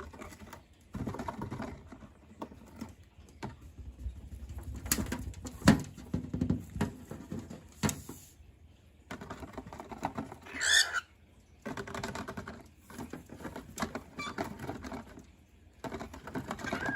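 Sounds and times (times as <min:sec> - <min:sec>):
bird claws tapping and scratching: 0:11.6 - 0:16.9.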